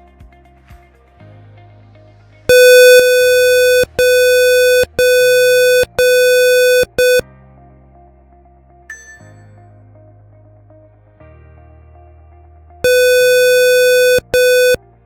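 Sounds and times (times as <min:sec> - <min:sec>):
electronic alarm buzzer beeping: 0:02.5 - 0:07.2, 0:12.9 - 0:14.8.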